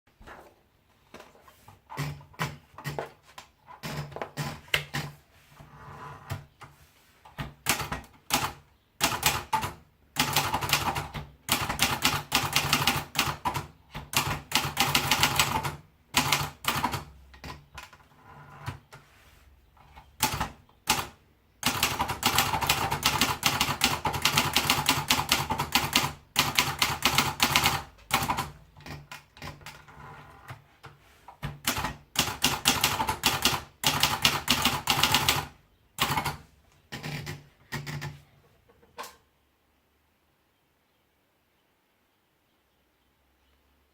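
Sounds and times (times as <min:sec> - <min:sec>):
typewriter keystroke clacks: 0:20.2 - 0:29.8, 0:31.4 - 0:38.2.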